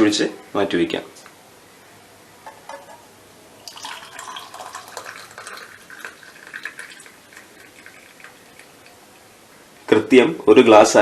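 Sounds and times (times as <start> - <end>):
liquid pouring into glass: 3.6 - 9.4.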